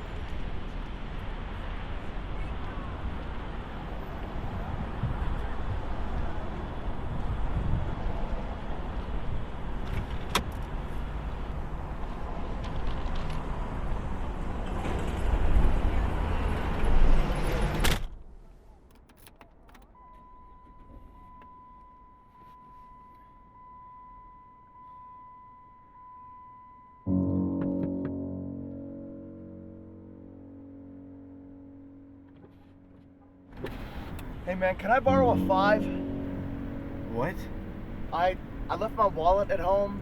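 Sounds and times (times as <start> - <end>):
car engine rumble: 0.0 - 40.0
road noise: 0.0 - 40.0
small clicks: 18.8 - 20.0
steady high beep: 20.0 - 27.2
music: 26.9 - 33.5, 35.1 - 40.0.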